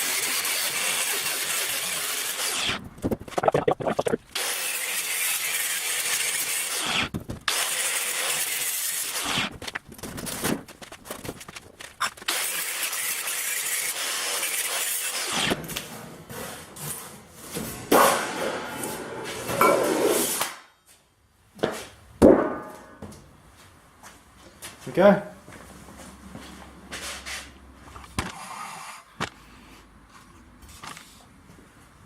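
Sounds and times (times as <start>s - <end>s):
angle grinder cutting sheet metal: 0.0s - 2.8s, 4.4s - 9.5s, 12.3s - 15.6s.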